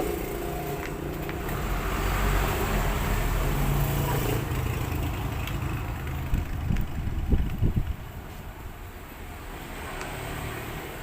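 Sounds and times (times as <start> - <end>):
low mechanical rumble: 4.7 - 8.2.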